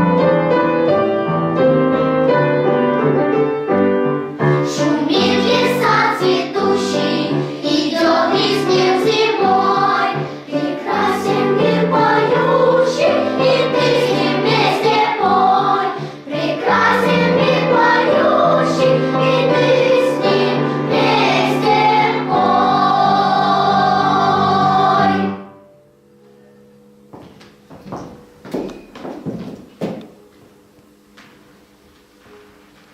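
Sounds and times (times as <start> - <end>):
children's choir singing: 4.4 - 25.6.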